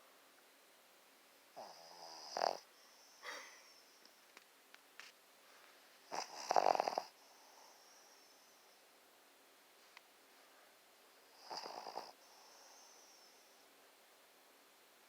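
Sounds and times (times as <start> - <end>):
animal snoring: 1.6 - 3.5, 6.1 - 8.4, 11.3 - 13.4.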